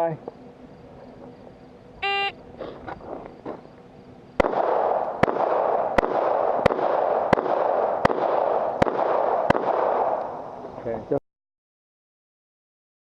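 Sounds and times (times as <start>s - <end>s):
shot timer beep: 2.0s - 2.3s
pistol shots: 4.4s - 10.2s.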